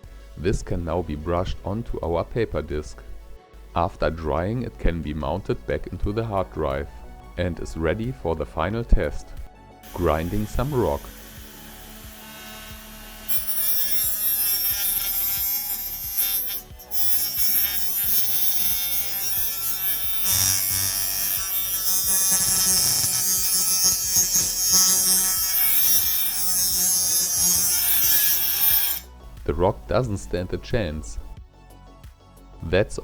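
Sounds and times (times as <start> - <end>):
high grinding hiss: 9.8 - 29.0.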